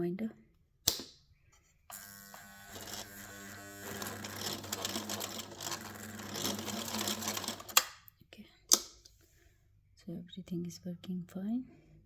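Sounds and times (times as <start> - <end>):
sewing machine motor humming: 1.9 - 7.9.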